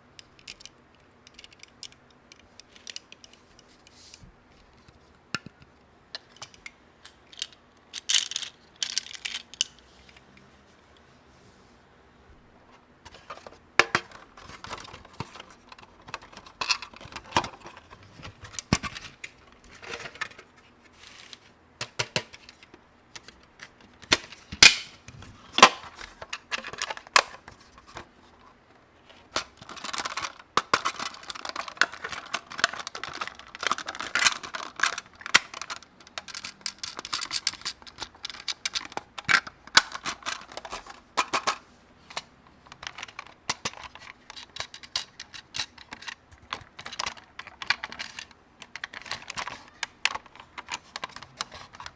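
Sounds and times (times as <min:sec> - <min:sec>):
plastic toy pieces clicking: 0:07.3 - 0:09.7, 0:29.4 - 0:41.4
rustling and crinkling: 0:12.7 - 0:21.6, 0:22.2 - 0:51.9.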